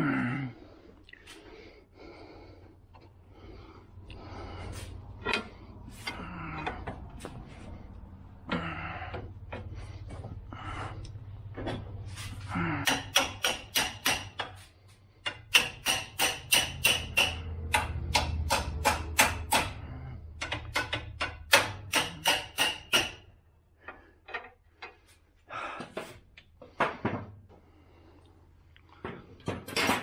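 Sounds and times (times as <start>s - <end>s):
hammering on metal: 12.8s - 14.6s, 15.2s - 23.3s.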